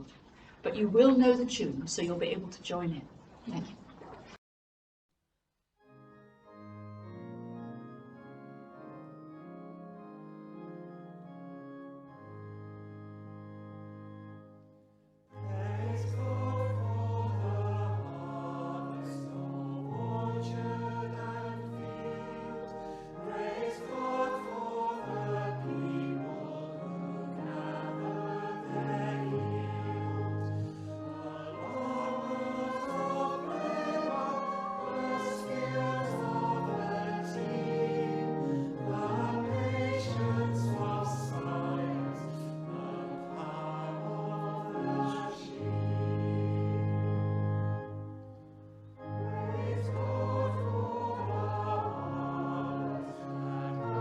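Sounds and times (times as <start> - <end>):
church organ playing: 5.8 - 54.0
congregation singing a hymn: 15.3 - 48.3, 48.9 - 54.0.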